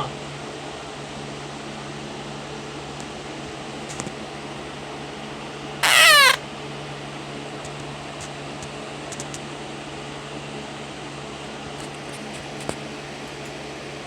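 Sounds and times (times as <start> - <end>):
room fan whirring: 0.0 - 14.0
cat meowing: 5.8 - 6.4.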